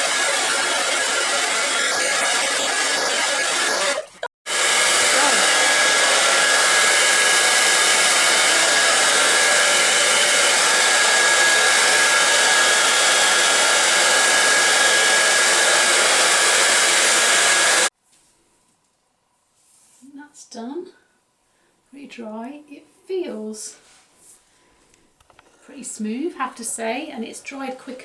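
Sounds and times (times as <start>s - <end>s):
hairdryer blowing: 0.0s - 17.9s.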